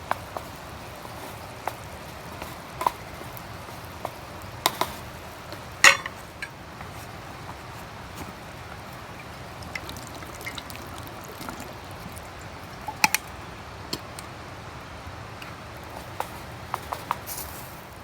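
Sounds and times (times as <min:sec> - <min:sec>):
steady low hiss: 0:00.0 - 0:18.0
utensil clinking against pot: 0:04.0 - 0:06.6, 0:08.7 - 0:14.3.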